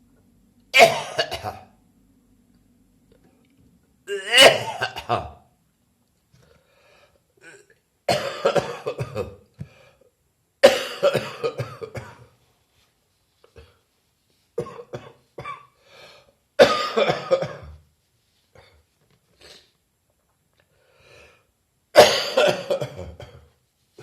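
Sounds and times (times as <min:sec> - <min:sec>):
person coughing harshly: 0:00.8 - 0:01.7, 0:04.1 - 0:05.4, 0:07.4 - 0:09.4, 0:10.6 - 0:12.3, 0:14.6 - 0:15.8, 0:16.6 - 0:17.8, 0:22.0 - 0:23.5.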